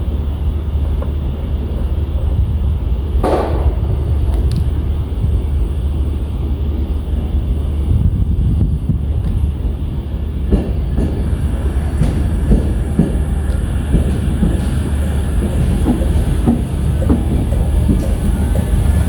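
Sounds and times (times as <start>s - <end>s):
train rumble: 0.0s - 19.0s
wheels clacking over rail joints: 9.2s - 19.0s.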